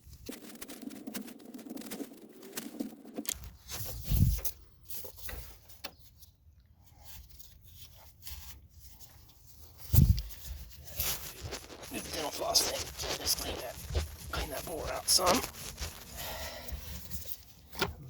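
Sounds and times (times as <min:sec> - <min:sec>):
scraping rub: 0:07.0 - 0:18.0.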